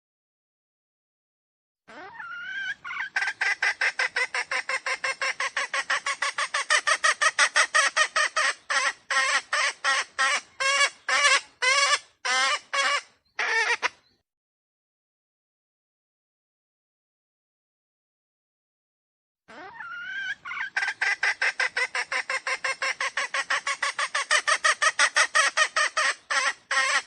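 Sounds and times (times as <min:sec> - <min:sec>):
junglefowl clucking: 0:02.0 - 0:14.0, 0:19.5 - 0:27.0.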